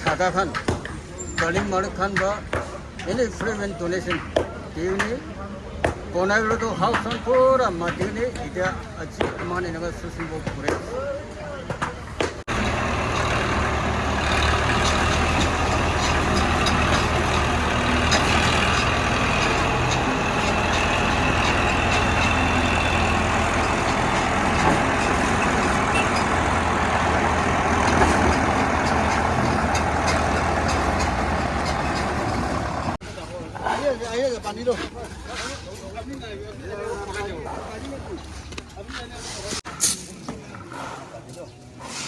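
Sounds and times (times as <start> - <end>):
heavy engine low hum: 12.4 - 33.3.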